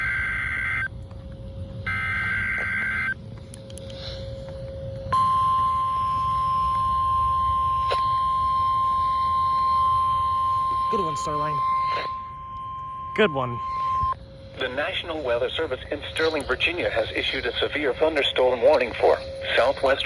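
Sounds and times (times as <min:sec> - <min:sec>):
steady warning alarm tone: 0:00.0 - 0:20.0
buzzy digital data bursts: 0:05.5 - 0:12.4.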